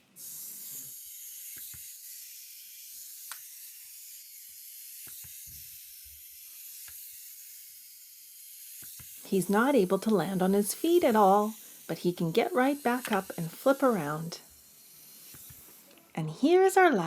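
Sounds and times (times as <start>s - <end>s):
clockwork toy motor whirring: 0.0s - 17.0s
plastic toy clicking on landing: 5.0s - 5.4s.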